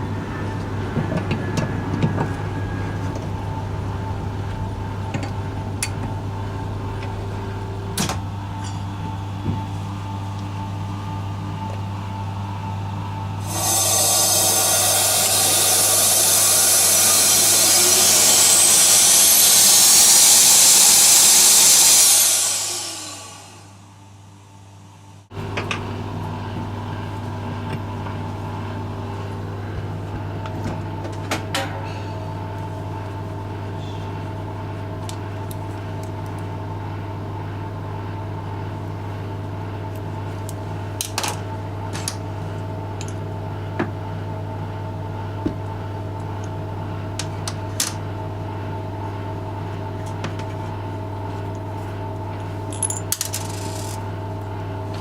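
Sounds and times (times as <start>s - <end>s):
machine humming: 0.0s - 25.6s
metal parts clinking: 52.7s - 54.0s.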